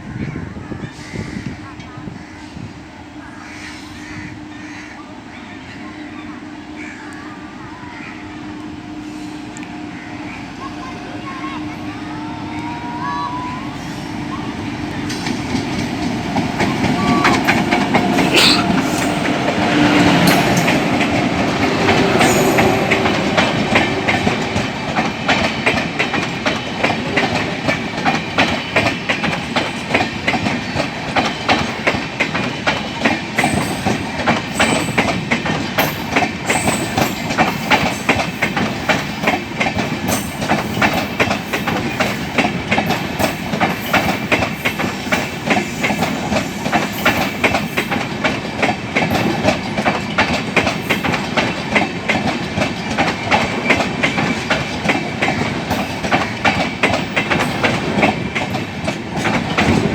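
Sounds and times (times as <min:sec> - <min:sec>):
train wheels clattering over rail joints: 0:15.0 - 0:59.9.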